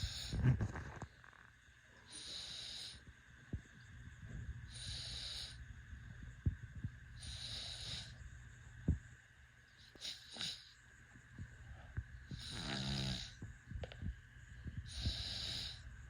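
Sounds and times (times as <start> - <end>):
baby snoring: 4.7 - 5.6, 7.2 - 8.2, 12.3 - 13.4, 14.9 - 15.8.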